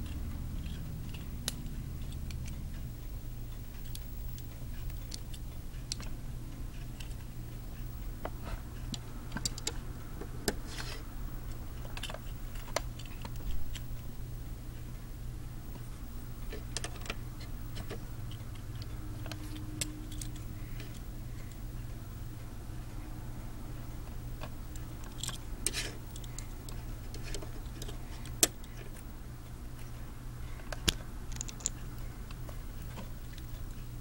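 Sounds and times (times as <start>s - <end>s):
steady low hum: 0.0s - 34.0s
plastic bricks clicking together: 30.7s - 31.8s.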